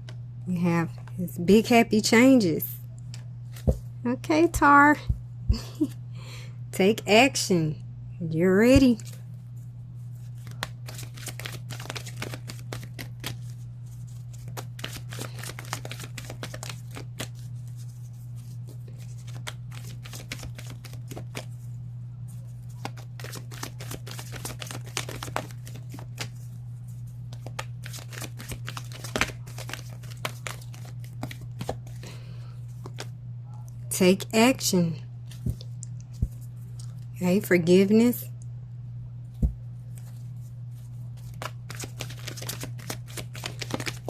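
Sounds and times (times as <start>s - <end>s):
steady low hum: 0.0s - 44.0s
cards shuffling: 10.2s - 21.5s, 22.6s - 26.5s, 27.3s - 32.1s, 32.8s - 33.1s, 39.4s - 44.0s.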